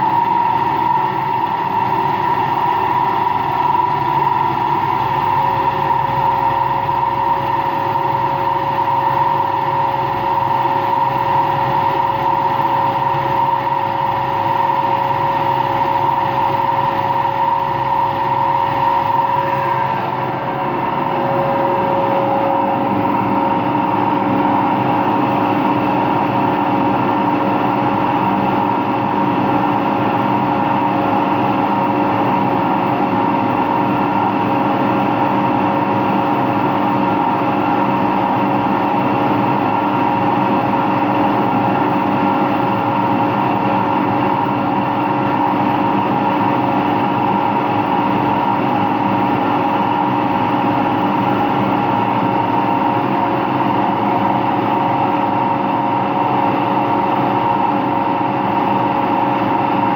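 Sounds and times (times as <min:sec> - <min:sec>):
washing machine spinning: 0:00.0 - 0:59.9.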